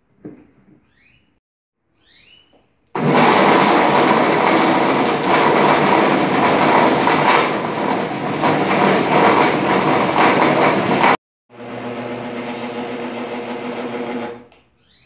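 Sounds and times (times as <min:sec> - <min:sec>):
blender motor churning: 0:03.0 - 0:14.6.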